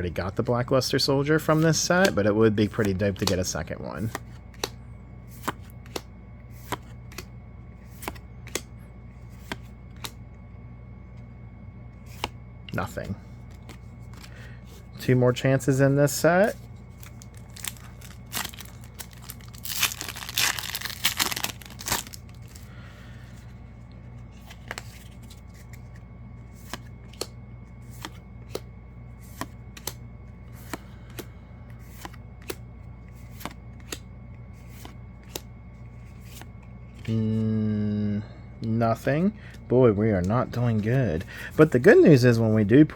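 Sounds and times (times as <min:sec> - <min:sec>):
foil pack tearing: 0:17.1 - 0:22.5.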